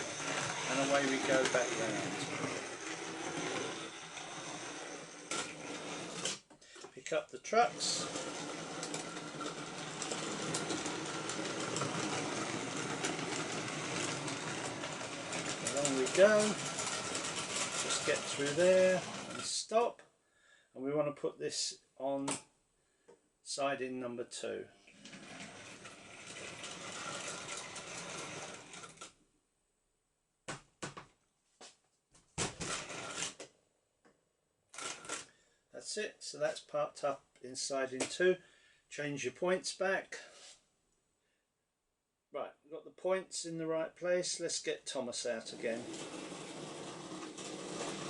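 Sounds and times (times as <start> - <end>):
model train motor humming: 0.0 - 6.3, 7.7 - 19.4, 45.5 - 48.0
wheels clicking on rails: 0.0 - 6.3, 7.7 - 19.5, 25.0 - 29.1, 45.5 - 48.0.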